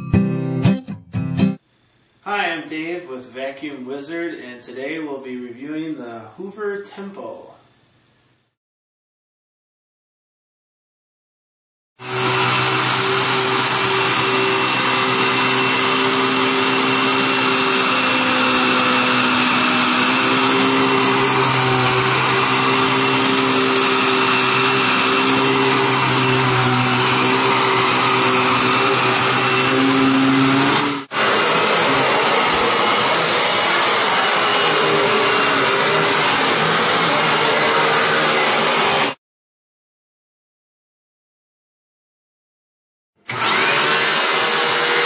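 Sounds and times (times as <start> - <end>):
vacuum cleaner running: 12.0 - 39.2, 43.3 - 45.0.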